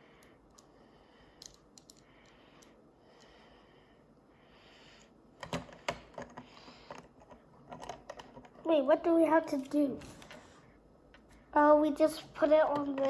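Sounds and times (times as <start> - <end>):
plastic toy pieces clicking: 1.4 - 2.4.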